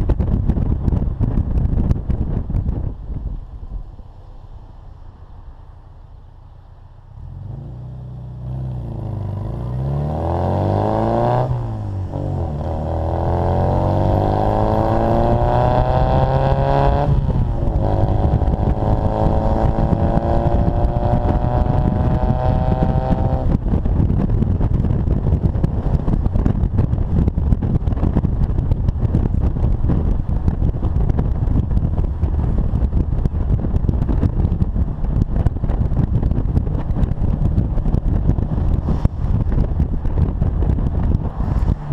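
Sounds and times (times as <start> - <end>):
wind and road noise: 0.0 - 41.9
car engine accelerating: 4.6 - 27.3, 33.9 - 41.9.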